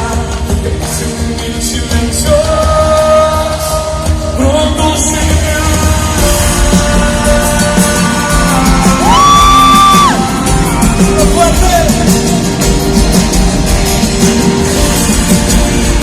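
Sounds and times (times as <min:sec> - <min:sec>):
live band music: 0:00.0 - 0:16.0
high voice crying out: 0:09.0 - 0:10.2.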